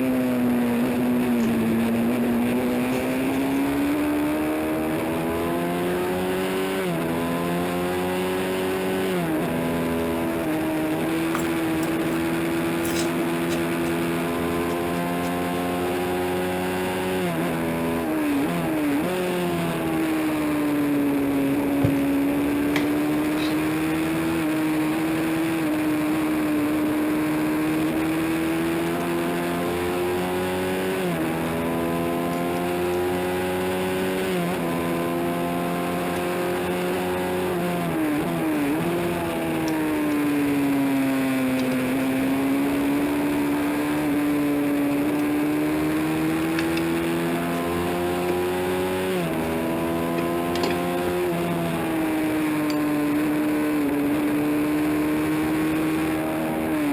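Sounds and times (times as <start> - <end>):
motorcycle engine revving: 4.4 - 19.4, 40.3 - 56.8.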